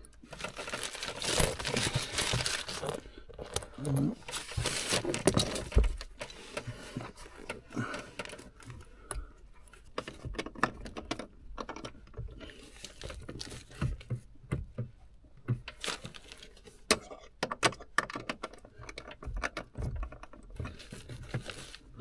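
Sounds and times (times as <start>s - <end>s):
small metallic clicks and scrapes: 15.6s - 22.0s.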